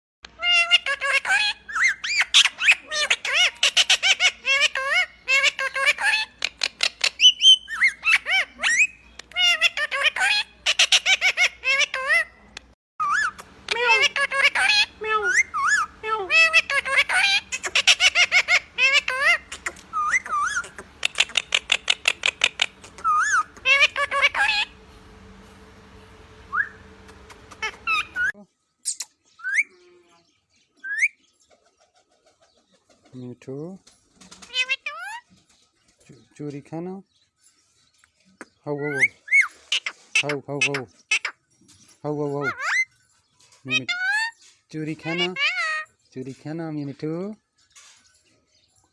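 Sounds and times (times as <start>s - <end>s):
parrot squawking and chirping: 0.3s - 24.8s, 26.5s - 31.3s, 34.3s - 35.5s, 38.3s - 46.1s
parakeet whistled calls: 14.5s - 24.7s, 27.6s - 28.3s, 28.9s - 29.8s, 30.8s - 31.2s.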